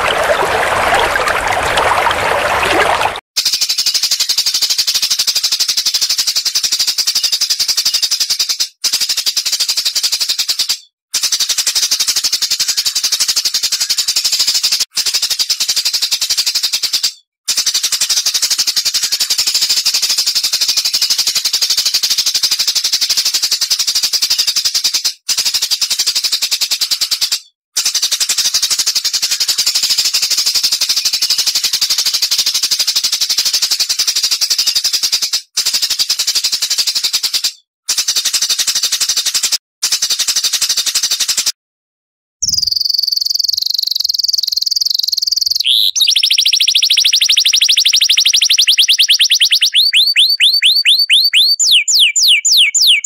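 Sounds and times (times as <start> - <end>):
songbird chattering high chirps: 42.4 - 53.0.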